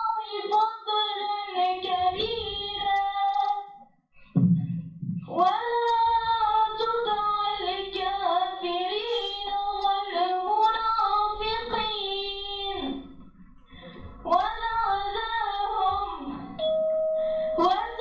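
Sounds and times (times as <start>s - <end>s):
low thump: 4.4s - 5.3s.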